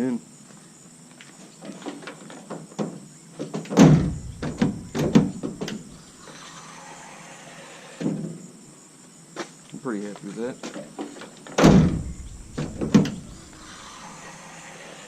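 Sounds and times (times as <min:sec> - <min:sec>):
tailgate metal clunks and clicks: 0:03.7 - 0:06.0, 0:11.6 - 0:13.6.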